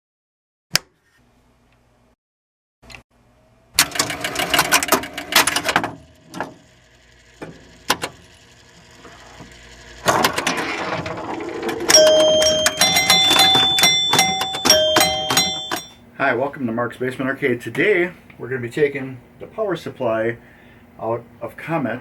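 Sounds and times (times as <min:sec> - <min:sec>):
rapid mechanical clicking and rattling: 0:03.8 - 0:11.9.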